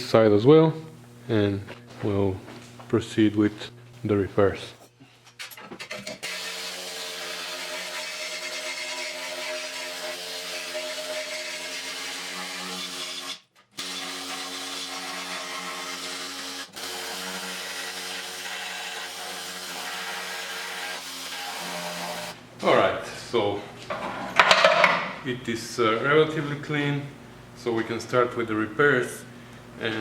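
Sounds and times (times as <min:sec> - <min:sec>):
power tool scouring rust off steel: 0:06.1 - 0:22.4.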